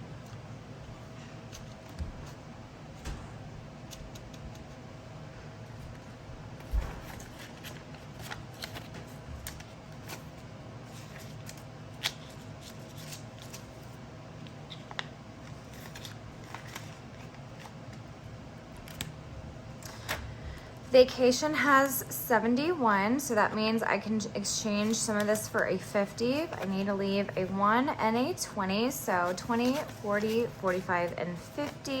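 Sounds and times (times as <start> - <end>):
faint steady hum: 0.0 - 32.0
banknotes rustling: 6.7 - 14.0, 14.7 - 18.0, 24.4 - 32.0.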